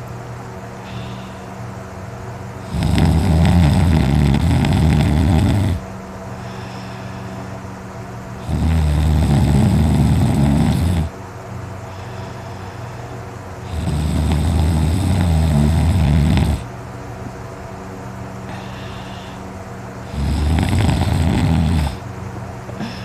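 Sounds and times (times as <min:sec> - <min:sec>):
man snoring loudly: 0:00.8 - 0:01.5, 0:02.6 - 0:05.8, 0:08.4 - 0:11.1, 0:13.6 - 0:16.7, 0:20.0 - 0:22.0.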